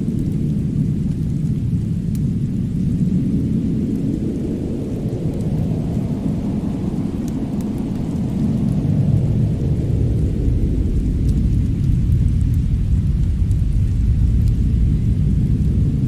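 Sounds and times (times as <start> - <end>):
deep rumbling storm: 0.0 - 16.0
fire crackling: 0.0 - 16.0.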